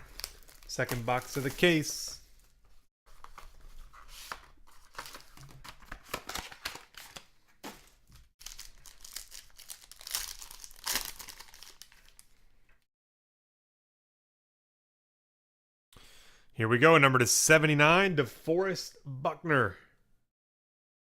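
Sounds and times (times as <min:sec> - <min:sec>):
plastic wrapping crinkling and tearing: 0:00.0 - 0:01.8, 0:08.4 - 0:12.4.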